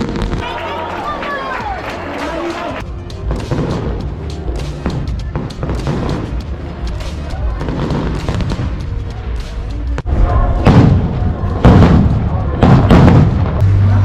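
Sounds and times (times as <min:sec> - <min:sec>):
firework crack: 0:00.0 - 0:13.8
music: 0:00.0 - 0:14.0
firework booms: 0:10.0 - 0:13.6.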